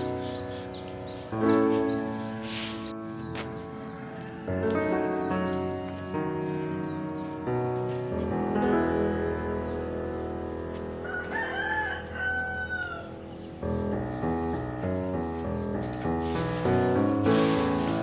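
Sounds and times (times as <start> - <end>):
piano background music: 0.0 - 18.0
rooster crowing: 11.0 - 13.2.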